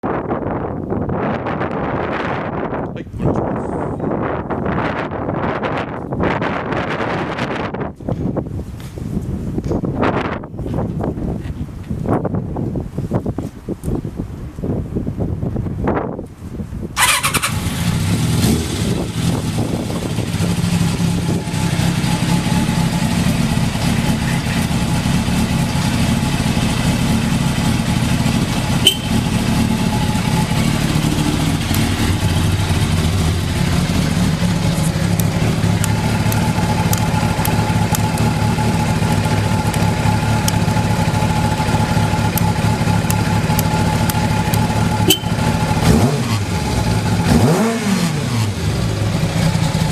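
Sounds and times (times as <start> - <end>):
motorcycle engine idling: 17.0 - 47.3, 48.5 - 49.9
motorcycle engine starting: 17.0 - 49.9.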